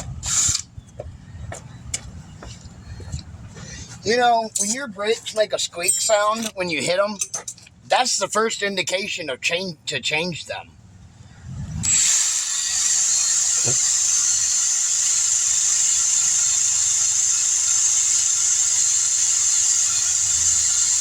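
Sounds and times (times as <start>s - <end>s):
power drill wire brush hissing: 0.1s - 0.7s, 11.8s - 21.0s.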